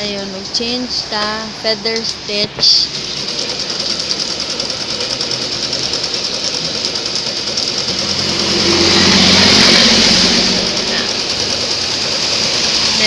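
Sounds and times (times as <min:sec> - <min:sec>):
sewing machine stitching: 0:03.0 - 0:13.0.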